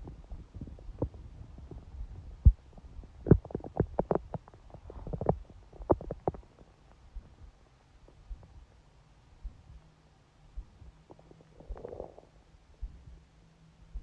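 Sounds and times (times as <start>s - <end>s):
stomach gurgling: 0.0s - 7.5s, 10.8s - 13.0s.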